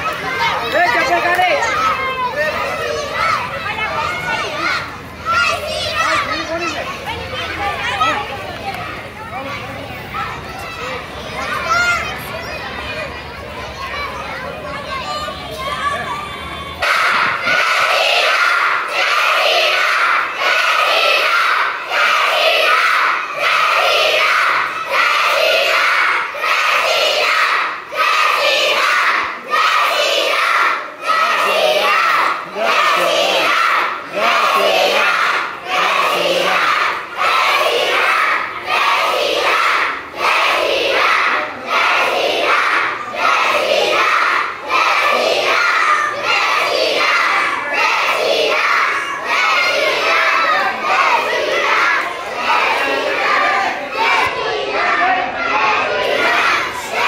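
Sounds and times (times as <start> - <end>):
children chanting in unison: 0.0 - 8.2, 16.8 - 57.0.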